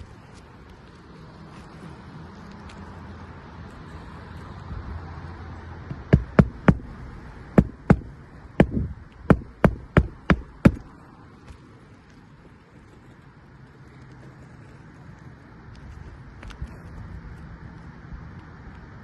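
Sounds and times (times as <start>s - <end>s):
hammer striking nails into shingles: 5.9s - 7.0s, 7.6s - 10.9s.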